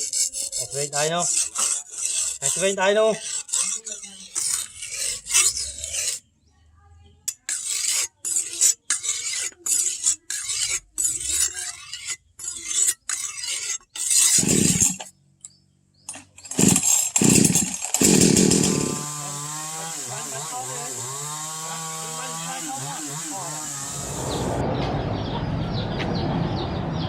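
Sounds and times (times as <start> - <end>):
file rasping on knife blade: 0.0 - 6.3, 7.3 - 15.1, 19.7 - 24.2
heavy scraping: 9.2 - 15.0
power tool whine: 14.3 - 15.0, 16.4 - 24.6.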